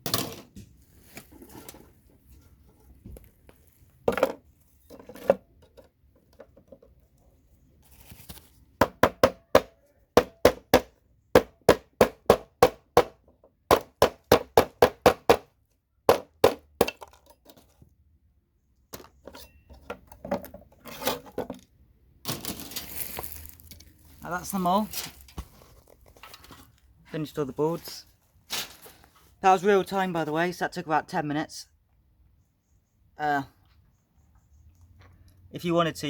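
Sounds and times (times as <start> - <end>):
boards and parts shuffling: 0.0 - 7.0, 19.0 - 26.9, 27.7 - 29.4.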